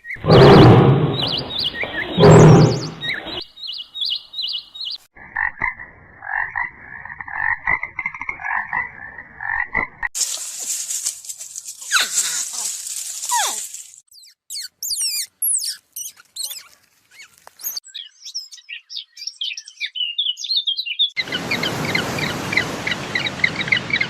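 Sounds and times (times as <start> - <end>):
loud noisy animal call: 0.2 - 3.4.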